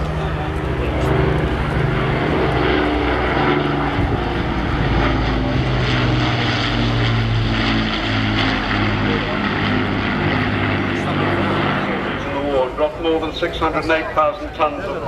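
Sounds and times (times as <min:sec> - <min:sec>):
propeller aircraft engines droning: 0:00.0 - 0:15.0.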